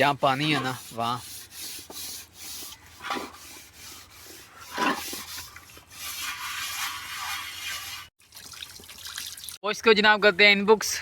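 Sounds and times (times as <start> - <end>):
pot being scrubbed: 0.2 - 8.1.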